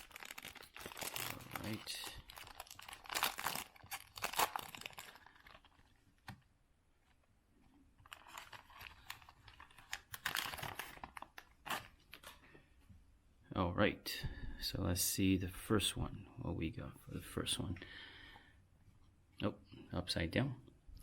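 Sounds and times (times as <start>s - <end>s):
wrapper tearing and crinkling: 0.0s - 6.0s, 8.0s - 12.4s.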